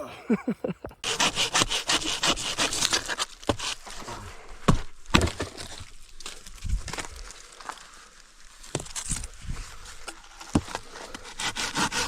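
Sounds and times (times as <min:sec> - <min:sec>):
hand saw cutting wood: 0:01.0 - 0:04.3, 0:10.1 - 0:12.0.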